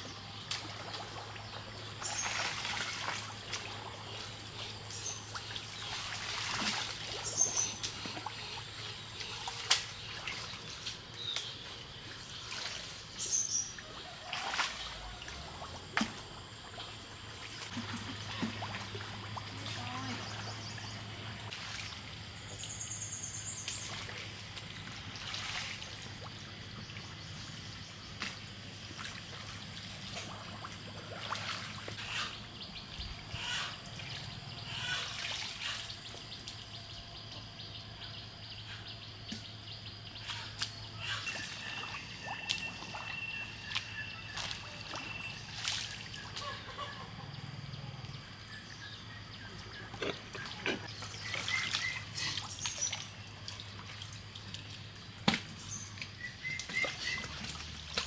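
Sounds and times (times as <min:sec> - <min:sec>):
water trickling and splashing: 0:00.0 - 0:58.0
bird calls: 0:31.8 - 0:53.2, 0:55.6 - 0:58.0.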